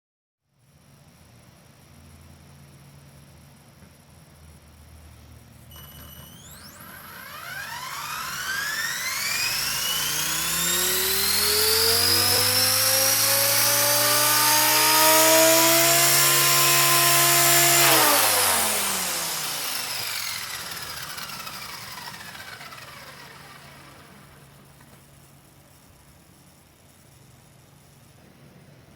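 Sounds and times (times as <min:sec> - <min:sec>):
electric helicopter motor whine: 0:05.7 - 0:26.0.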